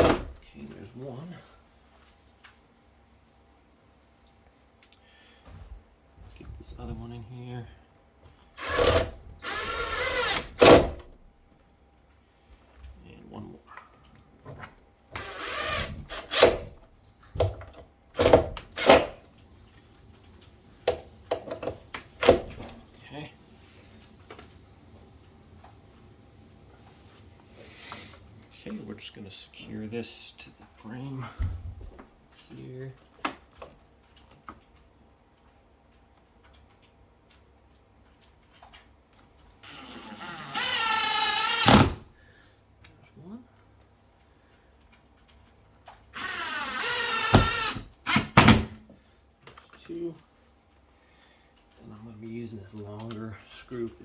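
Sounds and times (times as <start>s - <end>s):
power drill driving screw: 0.0s - 0.4s, 8.6s - 11.1s, 15.1s - 16.8s, 18.2s - 19.3s, 20.8s - 24.6s, 39.6s - 42.1s, 46.1s - 48.8s.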